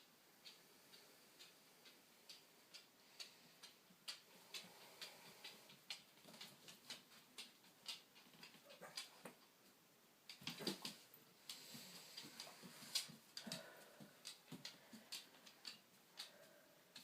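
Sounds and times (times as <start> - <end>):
clock ticking faintly: 0.0 - 9.5.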